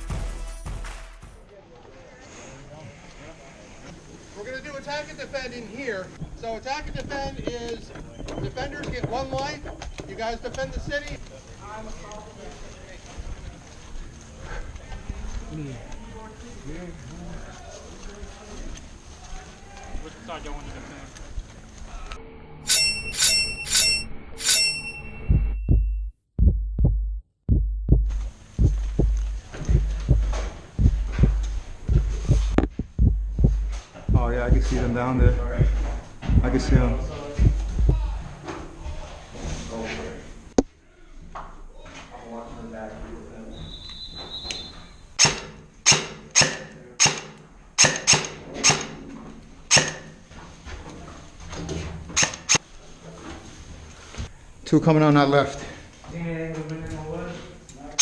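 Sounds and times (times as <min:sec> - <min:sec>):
bell-like chimes: 0:00.0 - 0:01.4, 0:22.7 - 0:26.0
airsoft rifle shots: 0:00.0 - 0:01.5
deep bass thumps: 0:00.0 - 0:01.5, 0:25.3 - 0:38.3.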